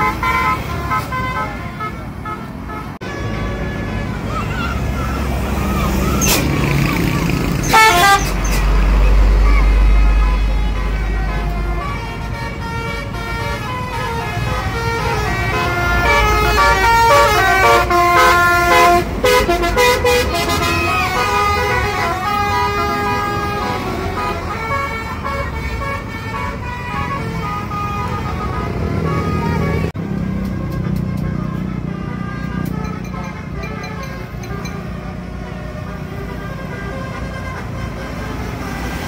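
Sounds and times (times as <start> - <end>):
low vehicle rumble: 0.0 - 39.0
musical bus horn tune: 0.0 - 39.0.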